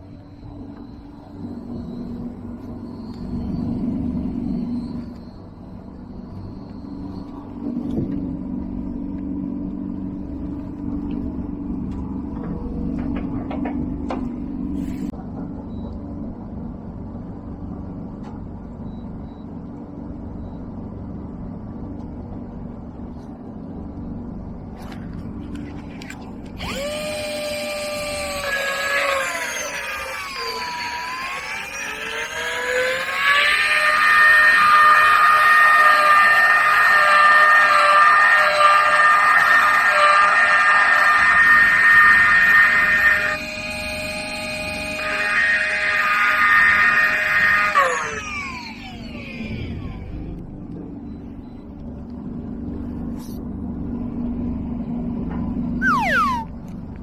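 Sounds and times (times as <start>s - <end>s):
small electric motor whining: 25.8s - 50.4s, 55.8s - 56.5s.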